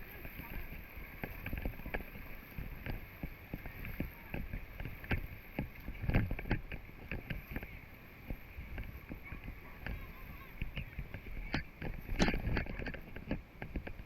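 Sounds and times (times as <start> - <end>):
water splashing and lapping: 0.0 - 14.0.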